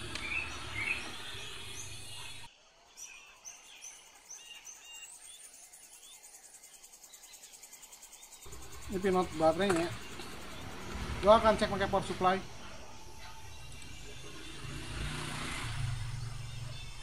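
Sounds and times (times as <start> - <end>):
small bird chirping: 0.0 - 17.0.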